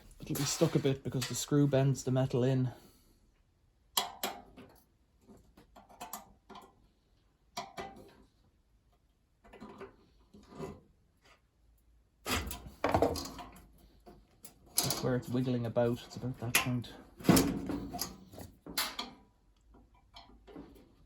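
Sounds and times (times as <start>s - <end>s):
small metallic clicks and scrapes: 4.0s - 11.5s, 12.3s - 21.0s.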